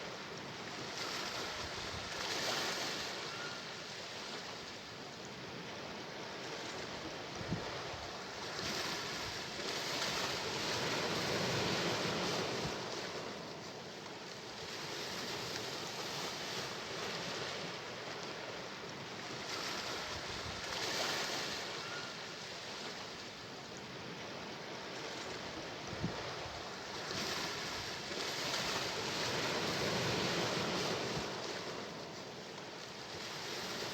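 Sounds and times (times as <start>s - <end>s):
sea waves breaking ashore: 0.0s - 33.9s.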